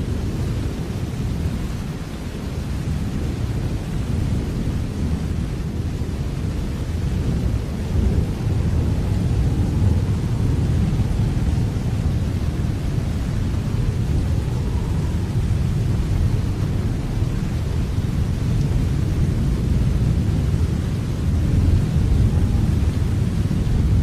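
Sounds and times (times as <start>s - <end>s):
steady rain: 0.0s - 24.0s
low rumble: 7.6s - 24.0s.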